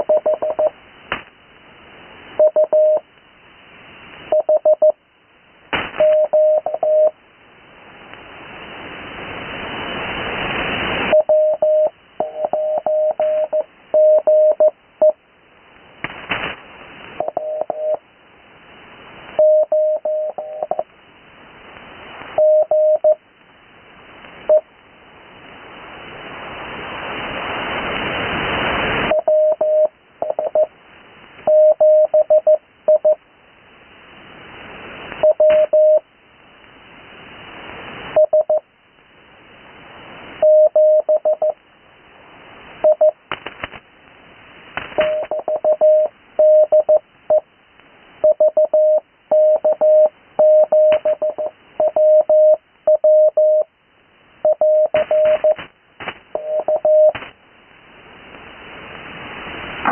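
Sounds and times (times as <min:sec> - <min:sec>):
morse code tone: 0:00.0 - 0:00.7, 0:02.4 - 0:03.0, 0:04.3 - 0:05.0, 0:06.0 - 0:07.2, 0:11.1 - 0:15.2, 0:17.2 - 0:18.0, 0:19.4 - 0:20.8, 0:22.4 - 0:23.2, 0:29.1 - 0:30.7, 0:31.5 - 0:33.2, 0:35.2 - 0:36.0, 0:40.4 - 0:41.6, 0:45.0 - 0:47.4, 0:48.2 - 0:53.7, 0:54.4 - 0:55.6, 0:56.4 - 0:57.2
radio band hiss: 0:05.6 - 0:07.1, 0:07.7 - 0:14.8, 0:15.6 - 0:22.9, 0:23.9 - 0:31.5, 0:54.7 - 0:57.4, 0:58.1 - 0:59.9.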